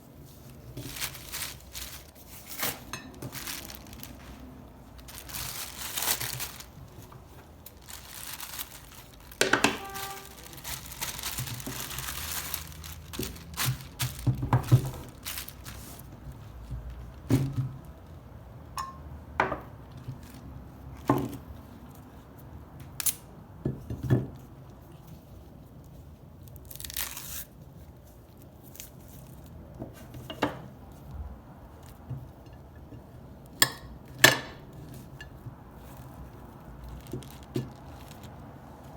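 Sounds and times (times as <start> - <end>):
rustling: 0.0 - 17.3, 34.8 - 38.9
peel tearing and crinkling: 0.5 - 16.2, 26.4 - 27.7, 36.5 - 38.9
handling clicks and knocks: 9.3 - 12.0.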